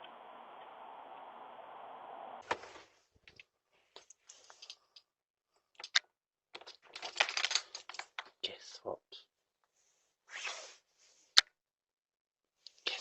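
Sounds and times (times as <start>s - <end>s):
noisy bursts: 0.0s - 2.6s.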